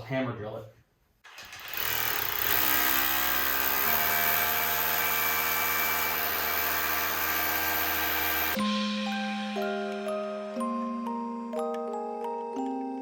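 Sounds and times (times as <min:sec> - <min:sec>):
hammer drill drilling into concrete: 0:01.3 - 0:08.6.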